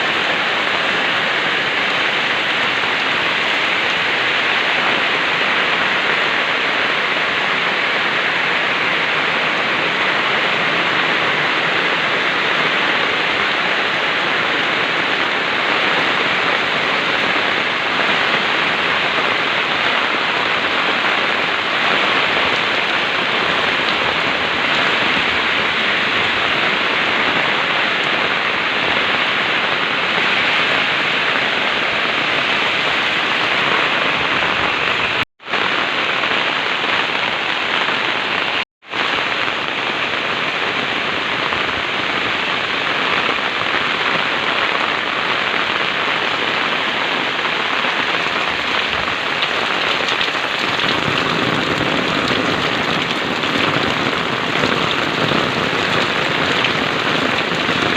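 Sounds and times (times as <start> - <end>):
heavy rain: 0.0 - 57.9.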